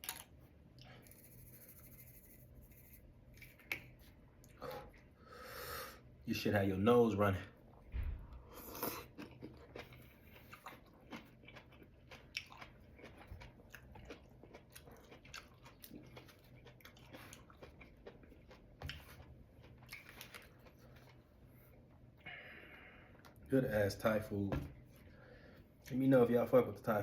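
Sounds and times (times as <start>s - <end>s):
person chewing food: 0.0s - 1.4s, 8.4s - 22.0s.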